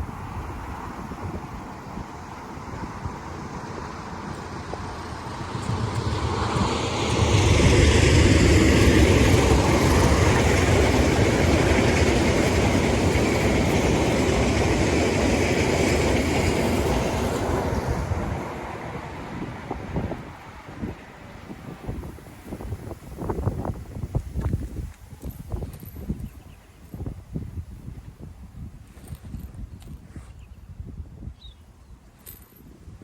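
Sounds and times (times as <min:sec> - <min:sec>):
train passing: 0:00.0 - 0:25.4.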